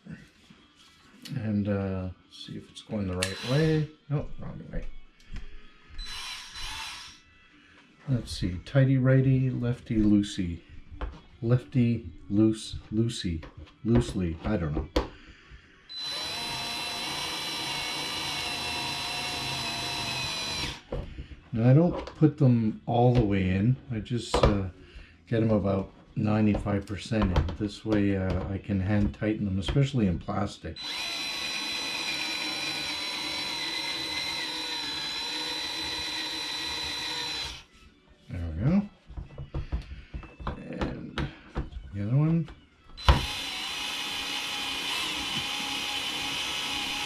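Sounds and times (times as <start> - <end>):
electric screwdriver motor whine: 3.2 - 3.9, 6.0 - 7.2, 15.9 - 20.8, 30.8 - 37.7, 43.0 - 47.0.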